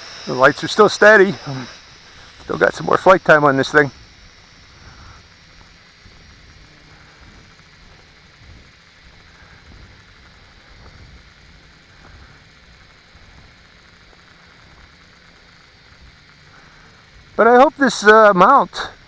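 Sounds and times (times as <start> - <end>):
faint hum: 0.0 - 19.0
steady hiss: 0.0 - 19.0
wind buffeting microphone: 4.0 - 13.6.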